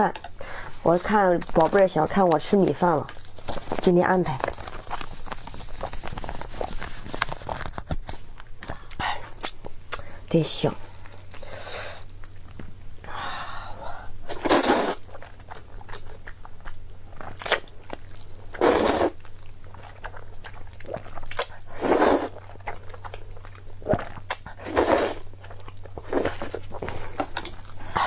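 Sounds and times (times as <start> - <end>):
chewing noodles: 14.3 - 28.0.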